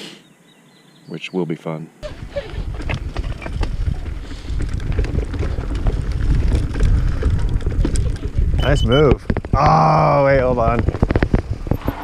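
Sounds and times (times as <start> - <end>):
tyres rolling over rough dirt: 2.0 - 12.0
wind buffeting microphone: 2.0 - 12.0
bike clicks and rattles: 2.2 - 9.7, 10.4 - 12.0.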